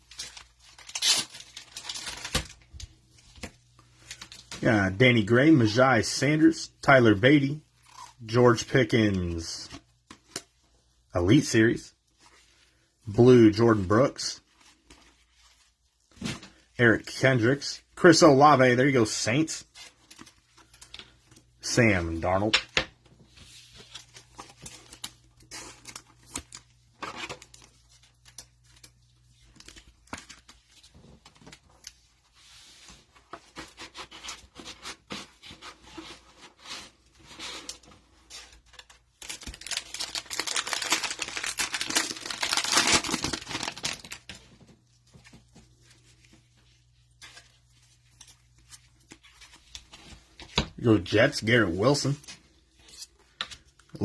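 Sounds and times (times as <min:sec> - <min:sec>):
wrapper tearing: 0:00.0 - 0:02.7, 0:38.7 - 0:44.4
plastic wrapper crinkling: 0:00.0 - 0:04.7, 0:38.5 - 0:49.9.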